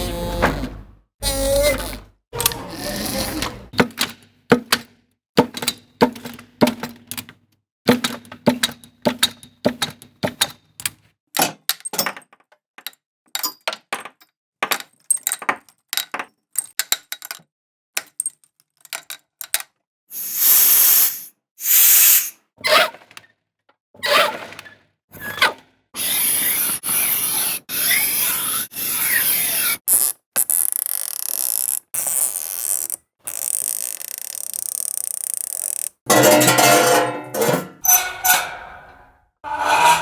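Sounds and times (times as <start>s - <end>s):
brief scrapes and rattles: 20.2s - 22.3s, 36.1s - 40.0s
hissing rushes: 20.2s - 22.3s.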